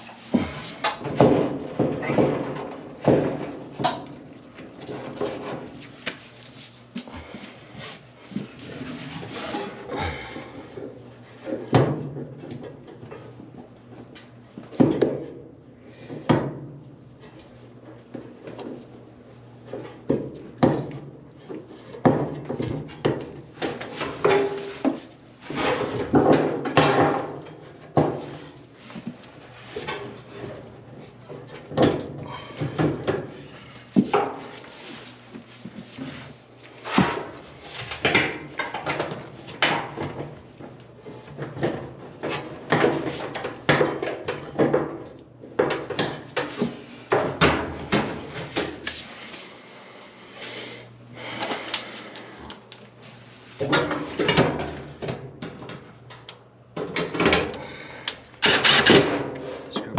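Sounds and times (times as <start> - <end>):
tools and metal parts clattering: 0.0 - 5.8, 21.5 - 28.2.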